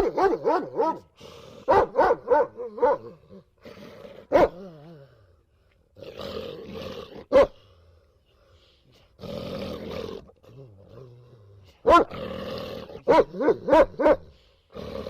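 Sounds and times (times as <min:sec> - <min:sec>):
dog yowling and barking: 0:13.1 - 0:14.2.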